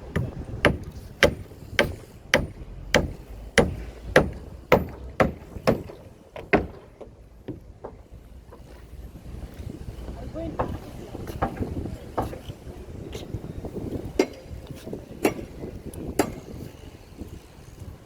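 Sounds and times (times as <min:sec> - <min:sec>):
sharp knocks: 0:00.1 - 0:08.0.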